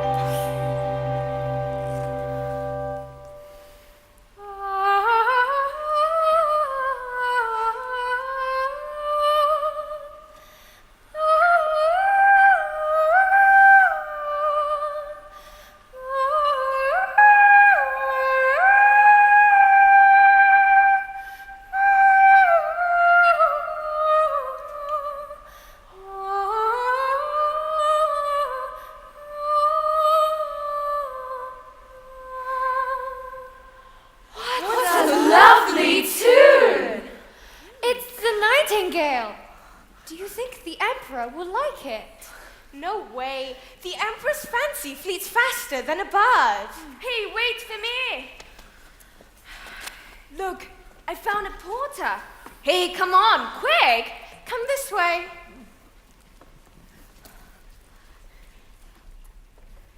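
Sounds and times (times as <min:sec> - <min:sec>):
woman singing wordless melody: 0:04.4 - 0:10.3, 0:11.2 - 0:15.3, 0:16.0 - 0:33.7.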